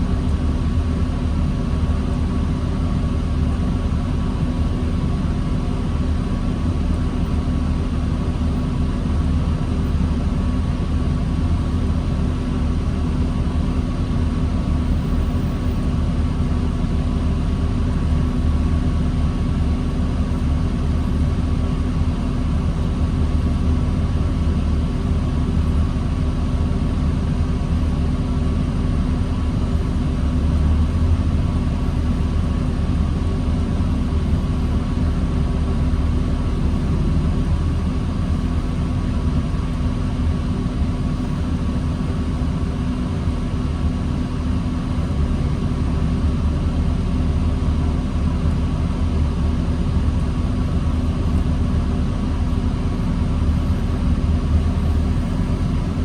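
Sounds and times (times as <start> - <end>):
bus diesel engine running: 0.0 - 56.0.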